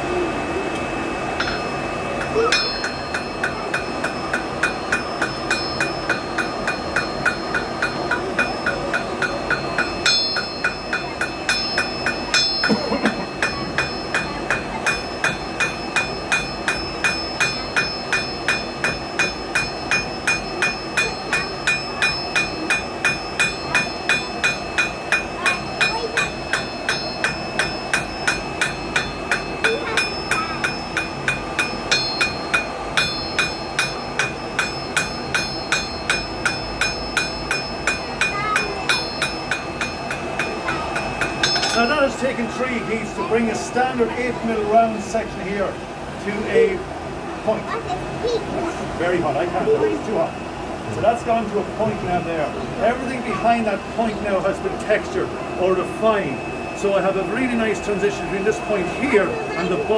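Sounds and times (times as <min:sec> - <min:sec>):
ringing tone: 0:01.4 - 0:42.0
hammer striking steel on anvil: 0:01.4 - 0:42.2.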